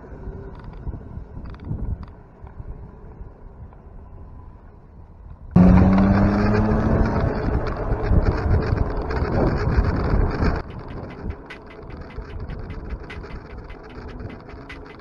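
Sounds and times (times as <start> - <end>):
wind and road noise: 0.0 - 15.0
vehicle engine running: 5.6 - 15.0
small ticks: 7.0 - 15.0.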